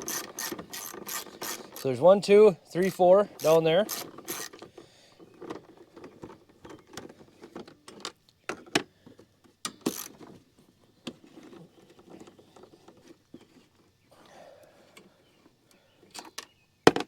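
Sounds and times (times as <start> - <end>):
ratchet wrench clicking: 0.0 - 1.9, 2.9 - 4.6
metal tools and bolts clinking: 2.9 - 4.6.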